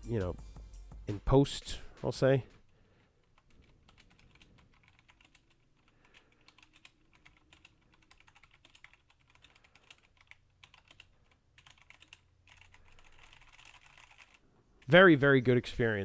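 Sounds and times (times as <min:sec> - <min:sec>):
mechanical keyboard typing: 0:03.2 - 0:15.0.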